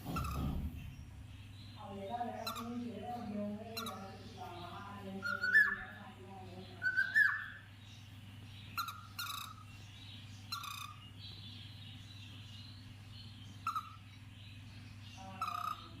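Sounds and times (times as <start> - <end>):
cockatiel chirping: 0.0 - 1.0, 2.4 - 4.1, 5.2 - 6.0, 6.8 - 7.6, 8.7 - 9.8, 10.4 - 12.7, 13.4 - 14.2, 15.2 - 16.0
steady low hum: 0.0 - 16.0.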